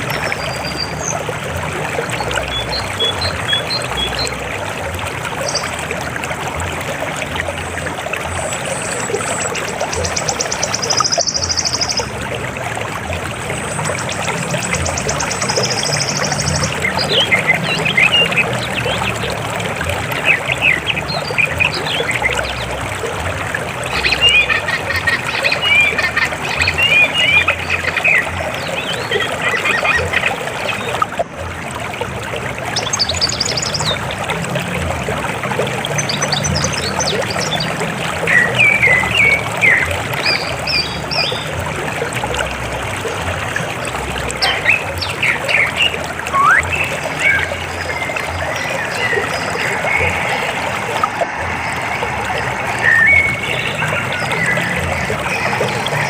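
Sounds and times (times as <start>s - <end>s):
river water flowing: 0.0s - 56.0s
bird chirps and calls: 44.4s - 47.5s.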